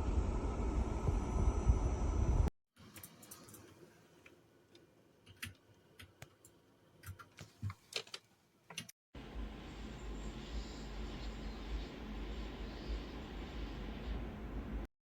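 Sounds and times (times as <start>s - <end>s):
steady low rumbling: 0.0s - 2.5s.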